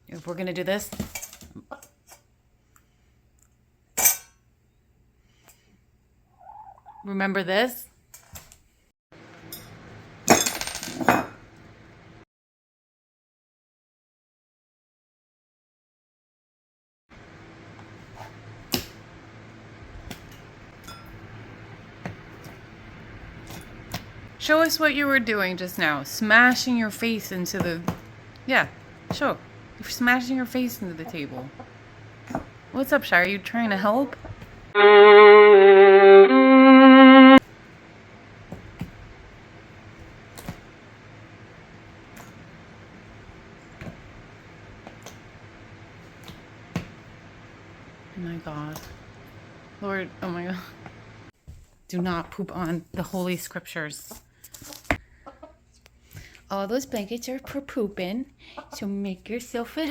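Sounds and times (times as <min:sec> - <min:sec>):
violin notes with vibrato: 0:34.8 - 0:37.4.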